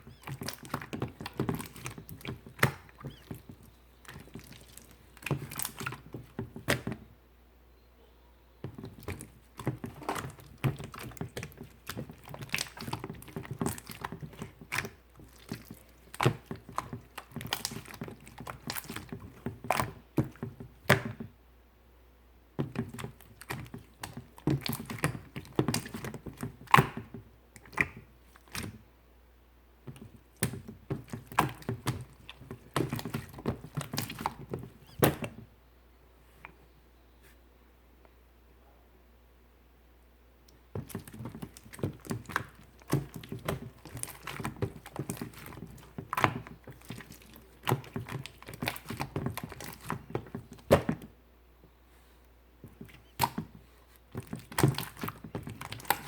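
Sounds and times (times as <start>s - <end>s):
slime squishing and popping: 8.8s - 21.2s, 22.6s - 28.8s, 40.8s - 51.0s, 52.7s - 56.0s.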